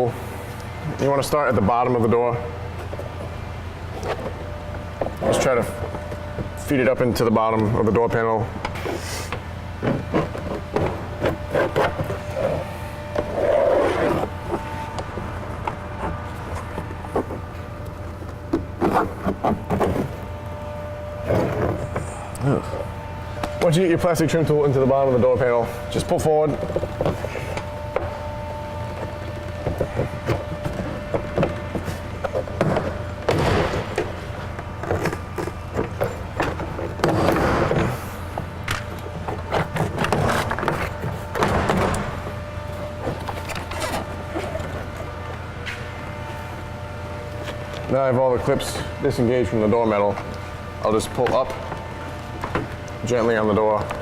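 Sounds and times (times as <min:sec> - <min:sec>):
plastic scraping rub: 0:09.9 - 0:14.8, 0:15.9 - 0:20.3.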